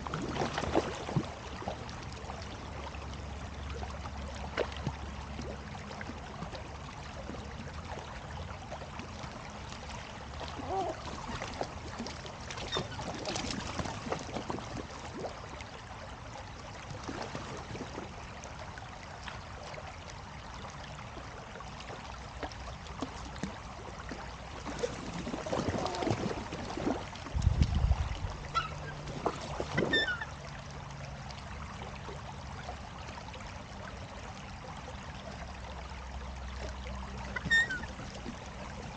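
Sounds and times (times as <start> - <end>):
water noise: 0.0 - 38.9
seagull calls: 28.6 - 29.0.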